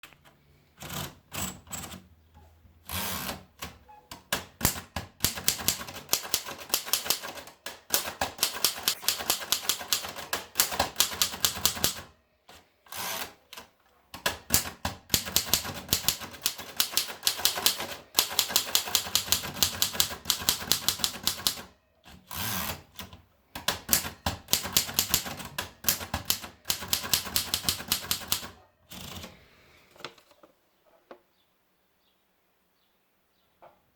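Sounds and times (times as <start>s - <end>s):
manual typewriter typing: 0.8s - 2.1s, 2.9s - 12.1s, 12.9s - 29.4s.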